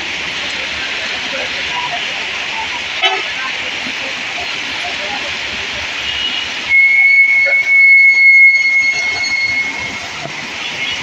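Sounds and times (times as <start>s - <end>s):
heavy rain hiss: 0.0s - 11.0s
bus horn blowing: 3.0s - 3.4s, 6.1s - 11.0s.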